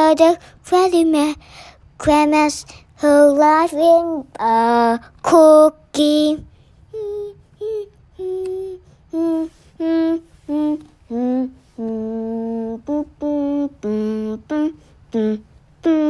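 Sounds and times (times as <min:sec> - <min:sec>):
child humming a tune: 0:06.0 - 0:16.0.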